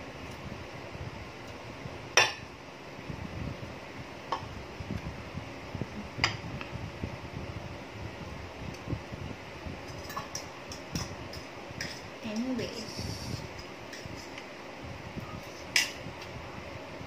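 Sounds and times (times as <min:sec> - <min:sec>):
cutlery clinking against a plate: 0:09.9 - 0:12.5.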